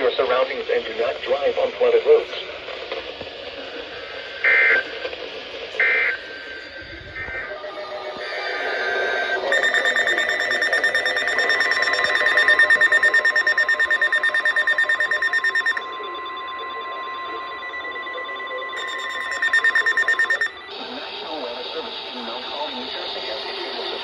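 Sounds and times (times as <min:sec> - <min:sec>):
steady electronic alarm tone: 0:04.4 - 0:04.9, 0:05.8 - 0:21.6
fast-pulsing electronic beep: 0:08.3 - 0:20.7.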